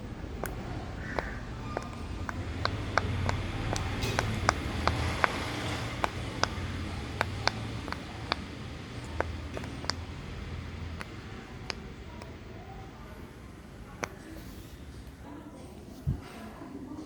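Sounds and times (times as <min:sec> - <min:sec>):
fidget toy bubbles popping: 0:00.3 - 0:12.4, 0:13.9 - 0:14.4.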